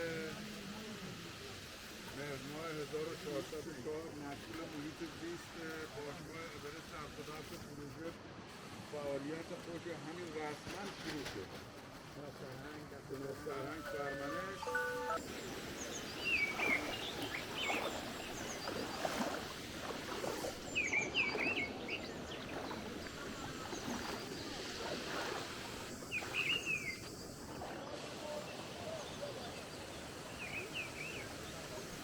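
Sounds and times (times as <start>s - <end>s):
outdoor background noise: 0.0s - 32.0s
songbirds chirping: 13.2s - 32.0s.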